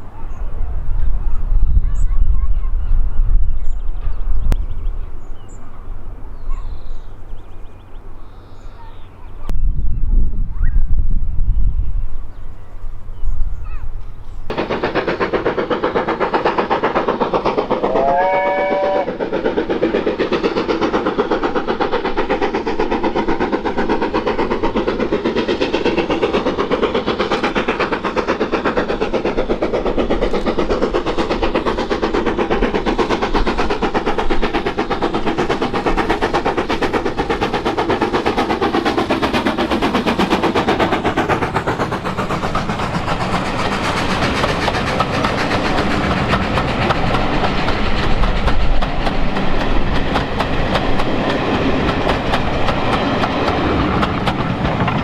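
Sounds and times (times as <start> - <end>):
running train noise: 0.0 - 55.0
steam locomotive whistle: 17.9 - 19.2.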